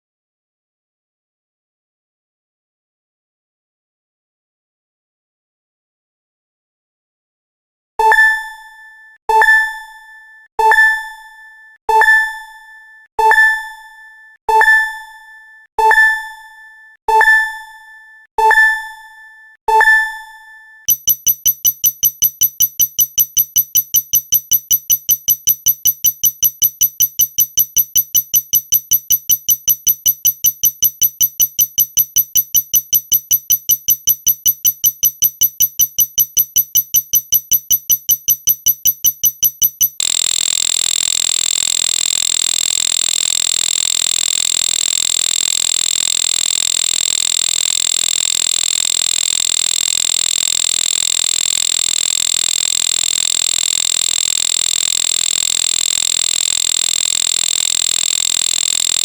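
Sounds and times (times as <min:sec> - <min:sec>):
pulsing electronic beeping: 0:20.9 - 0:59.0.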